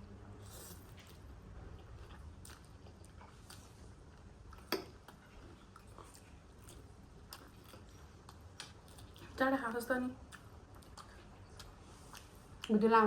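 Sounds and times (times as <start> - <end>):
faint chewing noodles: 0.4 - 13.0.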